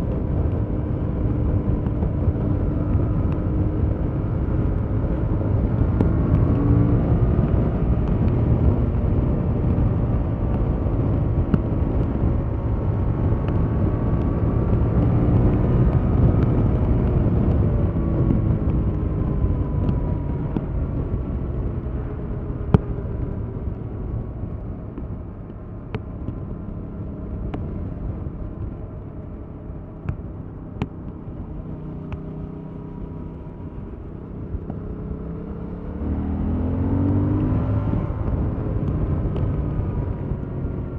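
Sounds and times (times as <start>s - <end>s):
motorcycle engine revving: 30.9s - 40.9s.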